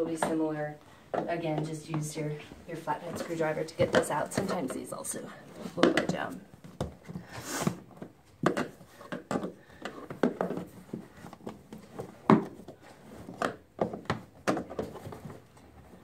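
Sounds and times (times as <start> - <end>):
plastic panels knocking and clicking: 8.4 - 12.7.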